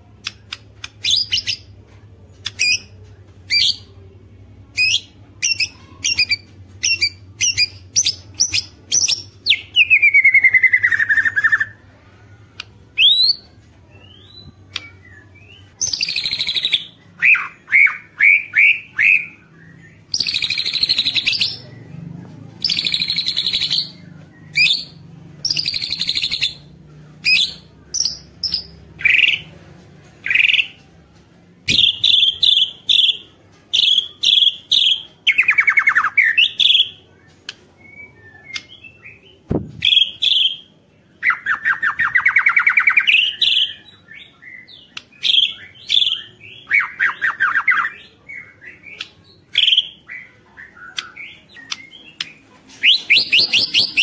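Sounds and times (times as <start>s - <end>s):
sharp clicks: 0.2s - 1.0s
bird singing whistled notes: 41.3s - 54.0s.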